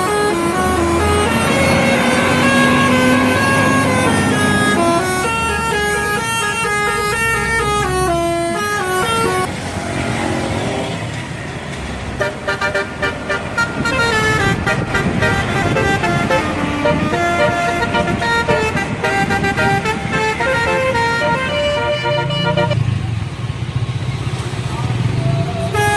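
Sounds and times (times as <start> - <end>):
musical air horns playing tune: 0.0 - 9.5, 12.2 - 22.8
engine and road noise: 0.0 - 25.9.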